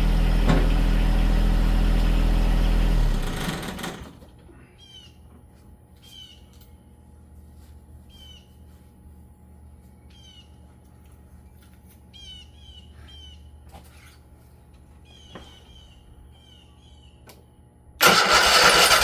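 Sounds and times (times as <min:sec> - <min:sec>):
songbird calling: 0:04.6 - 0:05.2, 0:06.0 - 0:06.5, 0:08.1 - 0:08.5, 0:10.0 - 0:10.6, 0:12.1 - 0:13.5, 0:15.0 - 0:17.3.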